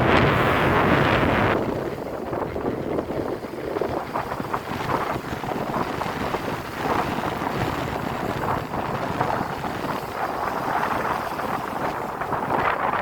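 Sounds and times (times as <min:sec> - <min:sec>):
sea waves splashing: 0:00.0 - 0:13.0
wind buffeting microphone: 0:00.0 - 0:13.0.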